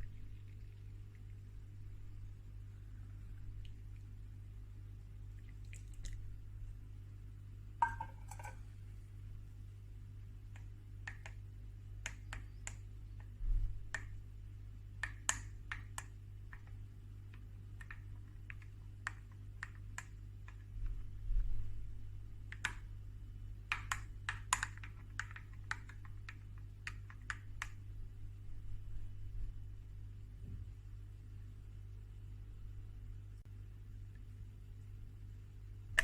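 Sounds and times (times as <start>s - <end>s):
steady low hum: 0.0s - 36.0s
kitchen items clicking and tapping: 7.8s - 8.6s.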